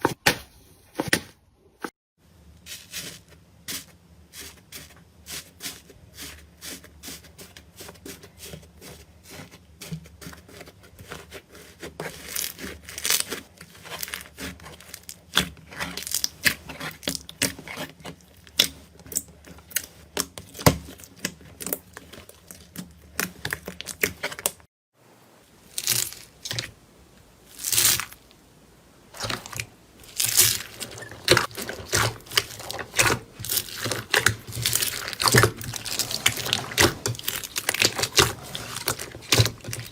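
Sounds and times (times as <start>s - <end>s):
slime crackling and squishing: 10.5s - 24.7s, 25.6s - 26.7s, 27.5s - 28.2s, 29.1s - 39.9s.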